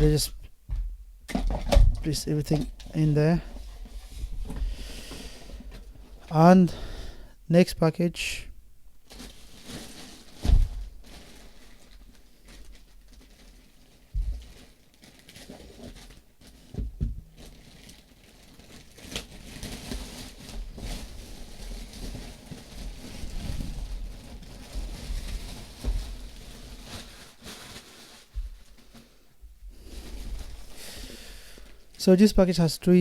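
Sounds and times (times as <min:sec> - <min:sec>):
low thumps: 0:00.0 - 0:02.0
plastic packaging crinkling: 0:09.0 - 0:32.0.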